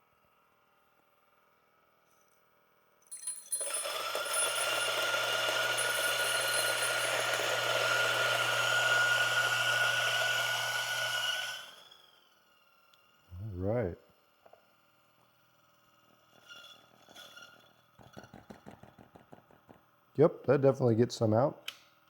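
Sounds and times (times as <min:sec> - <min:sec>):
coffee beans grinding: 0:03.1 - 0:13.0, 0:15.2 - 0:19.8
grinder motor whine: 0:03.6 - 0:13.3.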